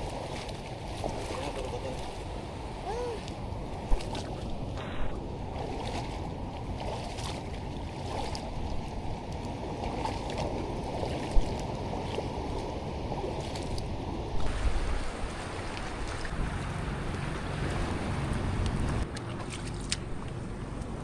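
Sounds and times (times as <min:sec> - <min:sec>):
wind on the microphone: 0:00.0 - 0:19.1
waves washing over rocks: 0:08.4 - 0:19.1.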